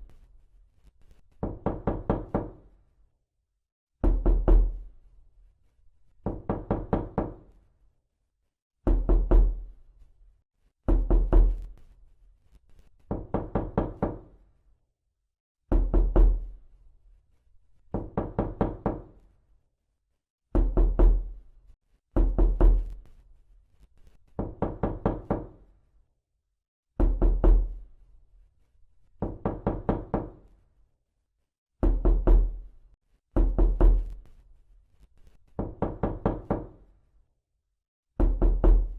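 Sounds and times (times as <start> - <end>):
knocking on a door: 1.4 - 2.7, 4.0 - 4.9, 6.2 - 7.5, 8.8 - 9.6, 10.9 - 11.7, 13.1 - 14.4, 15.7 - 16.5, 17.9 - 19.1, 20.5 - 21.3, 22.2 - 23.0, 24.4 - 25.6, 27.0 - 27.8, 29.2 - 30.4, 31.8 - 32.6, 33.4 - 34.2, 35.6 - 36.8, 38.2 - 38.9.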